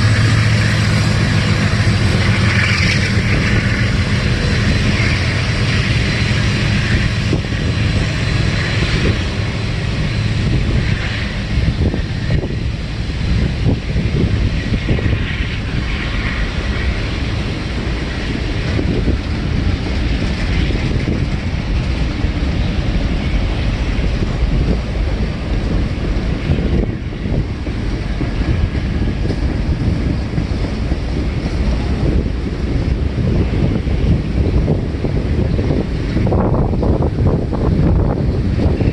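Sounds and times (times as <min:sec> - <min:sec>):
rail joint clicks and knocks: 0:00.0 - 0:38.9
train wheels rumbling on rail: 0:00.0 - 0:38.9.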